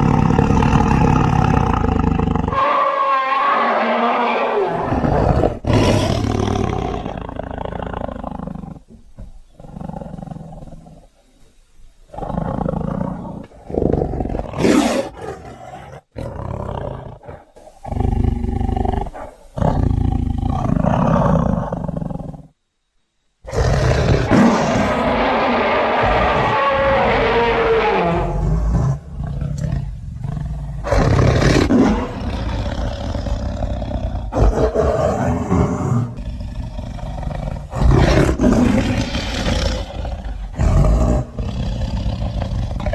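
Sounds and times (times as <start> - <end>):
big cat roaring and growling: 0.0 - 8.8, 23.5 - 42.9.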